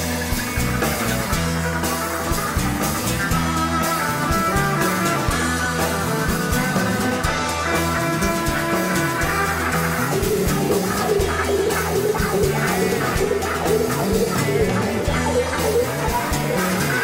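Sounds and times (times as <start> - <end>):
rock music: 0.0 - 17.0.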